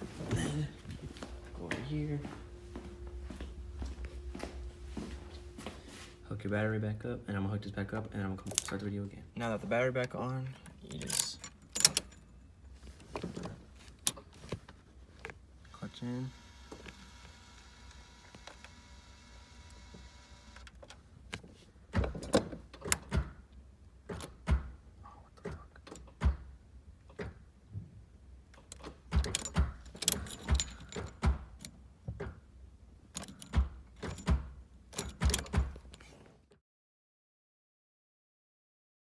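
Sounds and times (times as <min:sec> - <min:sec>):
keys jangling: 0:10.9 - 0:12.4, 0:28.7 - 0:31.7, 0:33.1 - 0:34.4, 0:35.0 - 0:35.6
ignition key clicking in lock: 0:11.0 - 0:12.2, 0:28.6 - 0:31.8, 0:33.1 - 0:34.4, 0:35.0 - 0:35.6.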